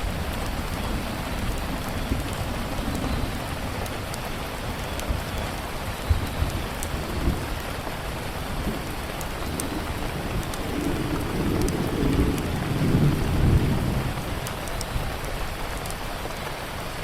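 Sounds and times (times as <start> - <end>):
steady rainfall: 0.0 - 17.0
sharp ticks: 9.0 - 13.6, 14.4 - 16.0.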